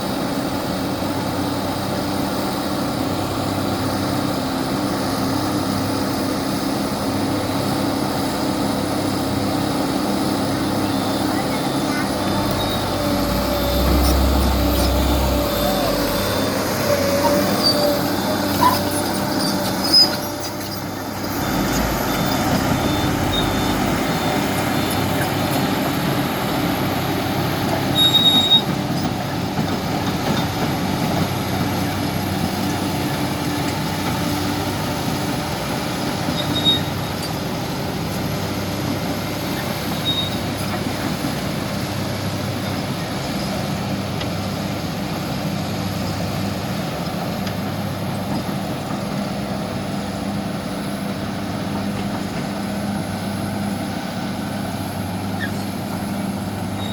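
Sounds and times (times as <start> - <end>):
excavator diesel engine running: 0.0 - 56.9
machine squeaks and knocks: 11.1 - 25.7, 27.8 - 29.2, 36.3 - 37.3, 39.9 - 40.8.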